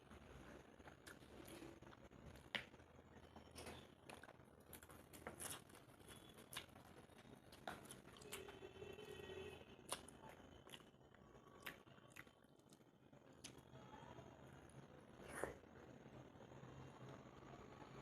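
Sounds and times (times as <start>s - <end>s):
close-miked eating sounds: 0.0s - 16.6s.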